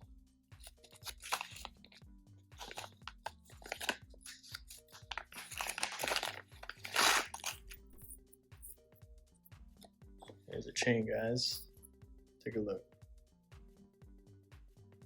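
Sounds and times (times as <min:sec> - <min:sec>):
background music with steady beat: 0:00.0 - 0:15.0
packaging crinkling and rustling: 0:00.6 - 0:02.0, 0:02.6 - 0:08.0.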